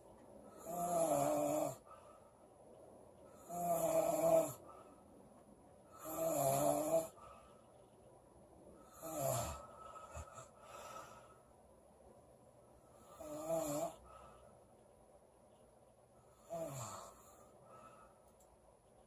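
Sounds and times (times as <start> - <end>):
quiet breathing: 0.0 - 19.0
woman snoring: 0.5 - 1.9, 3.4 - 4.6, 5.9 - 7.2, 8.9 - 10.5, 13.0 - 14.1, 16.4 - 17.4.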